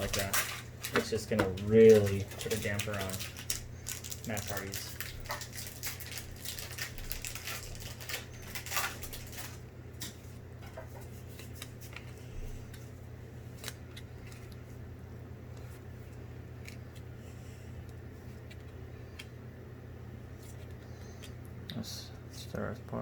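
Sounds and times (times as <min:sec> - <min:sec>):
cards and wrapper rustling: 0:00.0 - 0:14.8.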